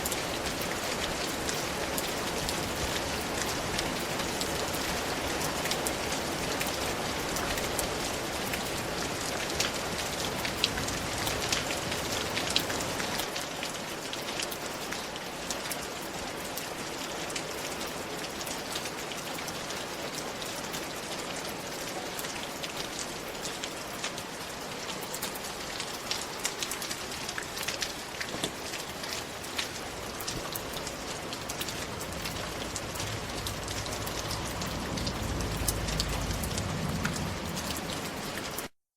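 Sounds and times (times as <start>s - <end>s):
raindrops ticking on a surface: 0.0s - 38.7s
rain falling: 0.0s - 38.8s
deep low rumble: 32.0s - 37.9s.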